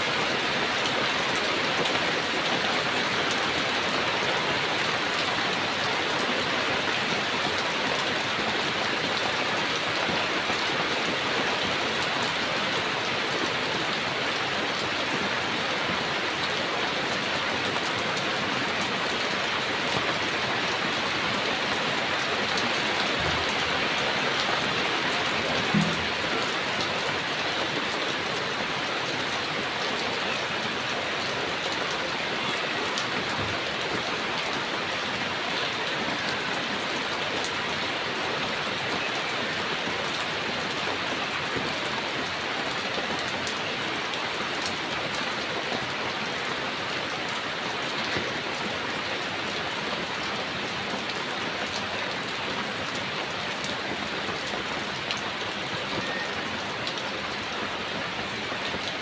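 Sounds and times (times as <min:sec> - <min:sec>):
heavy rain falling: 0:00.0 - 0:59.0
low knock: 0:25.7 - 0:26.2.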